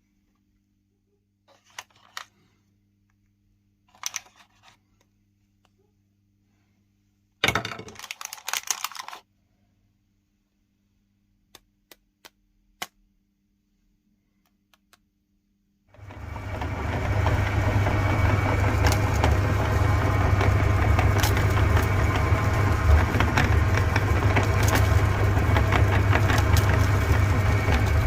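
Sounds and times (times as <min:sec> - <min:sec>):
rustling handling noise: 0:01.5 - 0:02.6, 0:03.8 - 0:05.8, 0:07.7 - 0:09.3.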